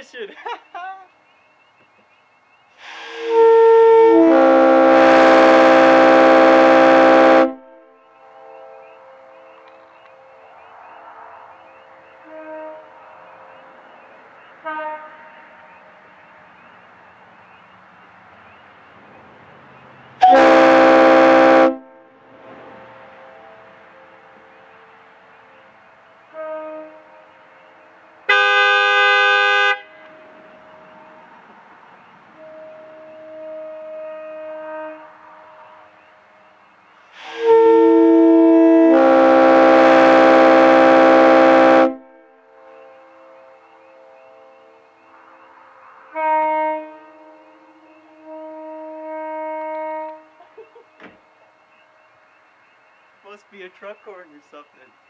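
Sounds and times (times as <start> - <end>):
air horn blast: 2.8 - 9.3, 12.2 - 13.1, 14.6 - 15.7, 20.2 - 22.2, 26.3 - 27.4, 28.3 - 31.2, 32.3 - 35.8, 37.1 - 44.8, 46.1 - 50.4.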